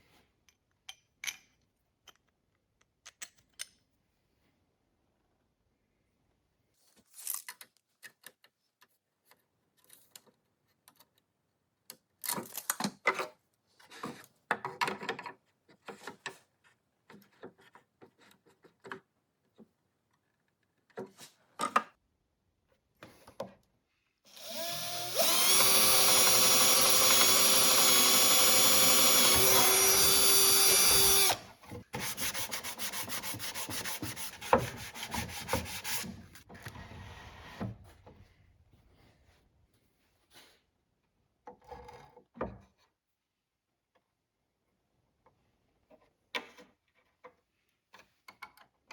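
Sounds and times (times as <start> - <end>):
power drill running: 24.3 - 31.5.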